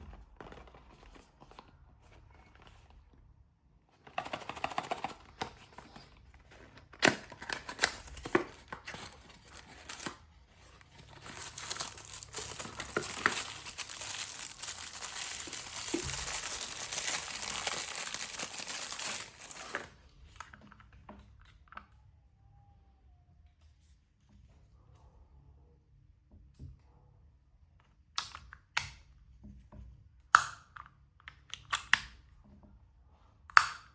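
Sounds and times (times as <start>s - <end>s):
packaging crinkling and ripping: 4.1s - 20.0s.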